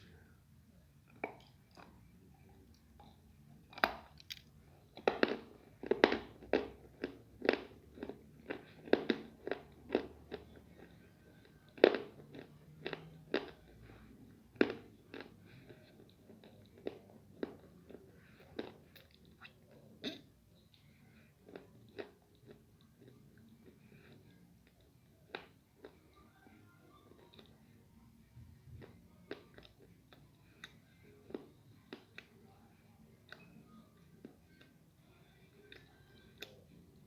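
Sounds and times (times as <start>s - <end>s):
crunchy food bites and chewing: 3.7s - 10.8s.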